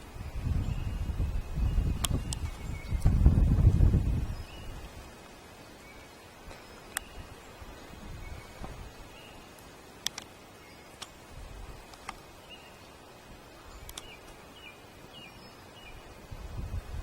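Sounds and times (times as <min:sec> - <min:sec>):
faint outdoor hiss: 0:00.0 - 0:17.0
small bird chirping: 0:00.2 - 0:04.9, 0:05.8 - 0:07.4, 0:13.6 - 0:16.1
sharp clicks: 0:10.0 - 0:10.3, 0:13.8 - 0:14.3.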